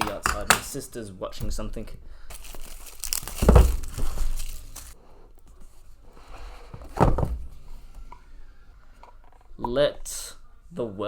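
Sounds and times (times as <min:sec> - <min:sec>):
packaging rustling: 0:00.0 - 0:05.0
dull thump: 0:03.2 - 0:04.9.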